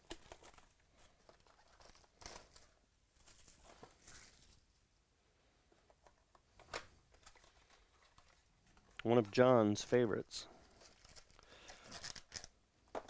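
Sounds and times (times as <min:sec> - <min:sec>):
rustling of trading cards: 0:00.0 - 0:04.8, 0:05.7 - 0:13.0.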